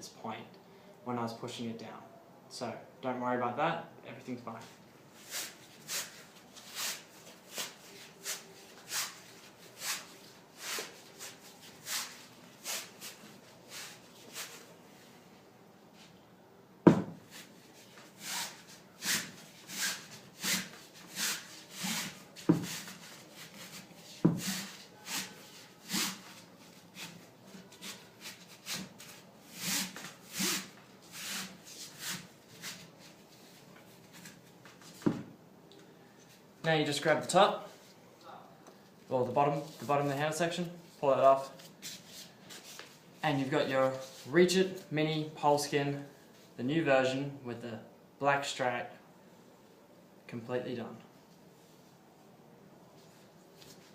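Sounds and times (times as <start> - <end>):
rubber sleeve rubbing swish: 5.2 - 14.7, 16.9 - 35.3
sharp knocks: 16.9 - 17.2.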